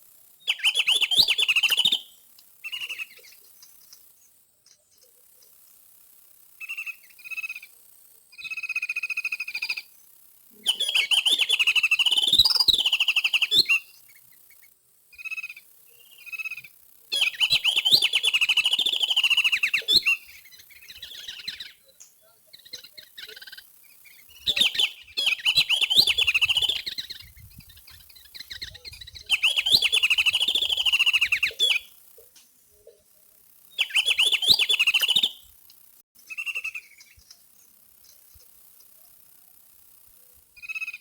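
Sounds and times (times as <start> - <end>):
songbird trilling: 0.5 - 4.1, 6.6 - 7.7, 10.6 - 14.6, 15.2 - 32.0, 33.7 - 35.5, 36.2 - 38.3.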